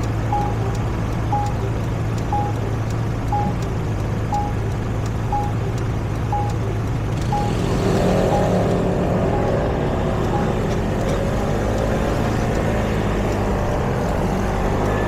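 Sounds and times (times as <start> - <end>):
traffic engine hum: 0.0 - 15.0
short electronic beeps: 0.3 - 0.6, 1.3 - 1.7, 2.3 - 2.7, 3.3 - 3.6, 4.3 - 4.7, 5.3 - 5.7, 6.3 - 11.8.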